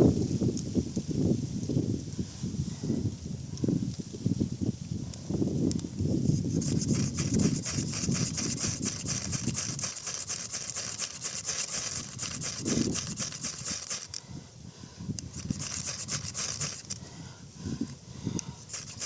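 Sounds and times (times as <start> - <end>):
ferro rod scraped with striker: 6.2 - 14.2, 15.2 - 17.1, 17.8 - 19.0.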